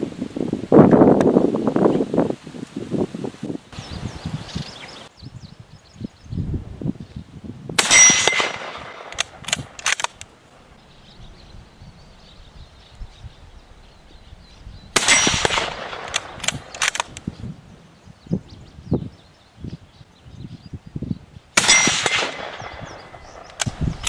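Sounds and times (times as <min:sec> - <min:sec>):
wind buffeting microphone: 0:00.0 - 0:24.0
rifle shots: 0:07.8 - 0:10.2, 0:15.0 - 0:17.3, 0:21.6 - 0:23.8
rifle bolt clicks: 0:07.9 - 0:10.3, 0:15.1 - 0:17.3, 0:23.3 - 0:23.8.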